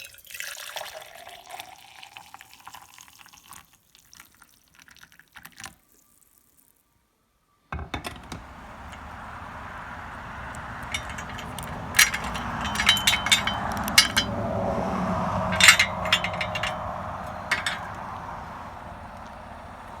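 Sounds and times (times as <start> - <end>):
sharp clicks and knocks: 7.8 - 20.0.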